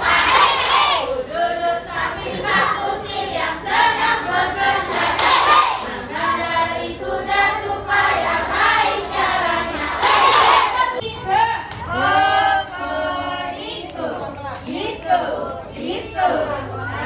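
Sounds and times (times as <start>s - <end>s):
young children singing in unison: 0.0s - 11.0s.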